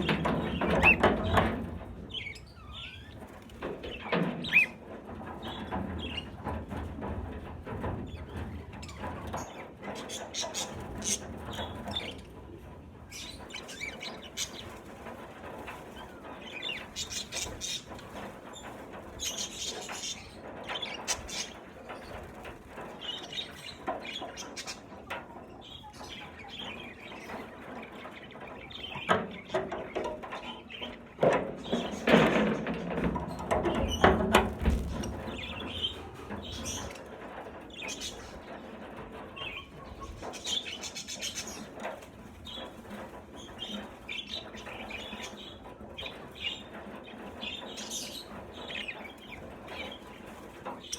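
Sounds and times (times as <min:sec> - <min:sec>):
budgerigars chirping and chattering: 0:00.0 - 0:04.8, 0:08.1 - 0:12.4, 0:13.1 - 0:32.3, 0:33.4 - 0:38.8, 0:39.4 - 0:50.9
wing flapping: 0:31.6 - 0:45.4.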